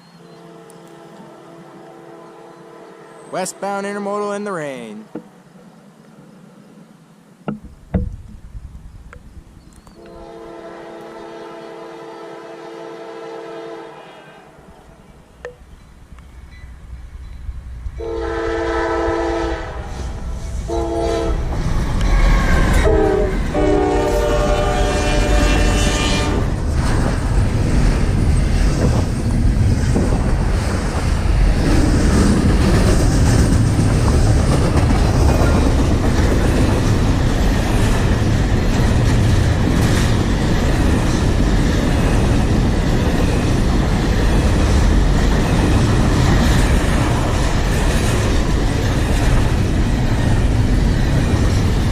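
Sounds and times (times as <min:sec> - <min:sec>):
train air horn blasts: 0:00.2 - 0:03.6, 0:10.0 - 0:14.7, 0:18.0 - 0:21.4, 0:22.3 - 0:26.5
train rumbling past: 0:10.0 - 0:51.9
wheels clacking on rail: 0:20.0 - 0:51.9.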